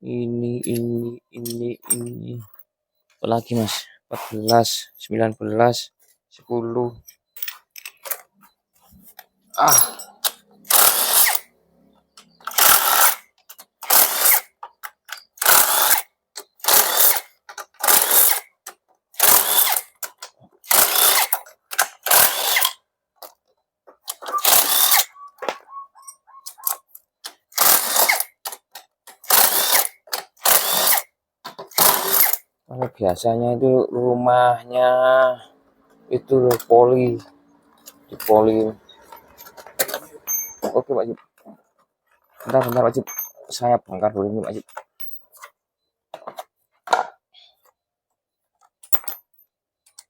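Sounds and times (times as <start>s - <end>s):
socket wrench ratcheting: 10.2s - 11.4s, 12.4s - 13.2s, 19.2s - 22.7s.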